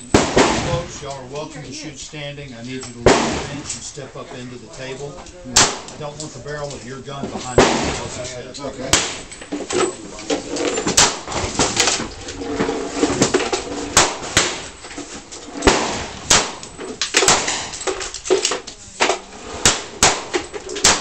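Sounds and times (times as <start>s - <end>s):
pistol gunshots with echo: 0.0s - 1.1s, 3.0s - 3.8s, 5.5s - 6.4s, 7.4s - 9.4s, 10.9s - 11.9s, 13.8s - 14.8s, 15.5s - 21.0s.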